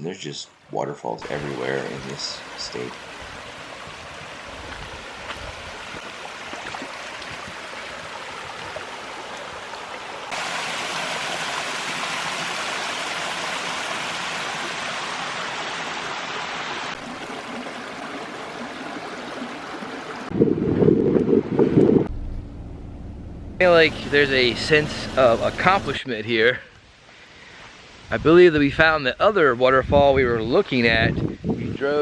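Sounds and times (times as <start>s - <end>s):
rushing water of waterfalls: 1.2s - 20.3s.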